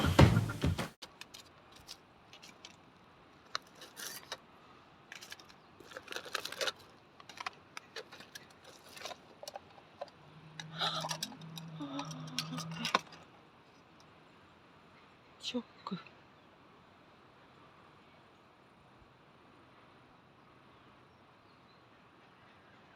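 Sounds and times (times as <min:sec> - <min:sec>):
small objects clicking and clattering: 0:01.0 - 0:04.4, 0:05.1 - 0:13.3.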